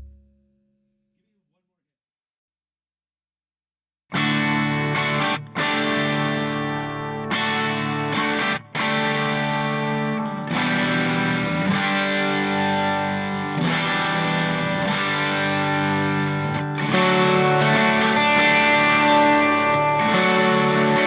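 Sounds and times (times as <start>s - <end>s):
distorted electric guitar chords: 0.0s - 0.4s, 4.2s - 21.0s.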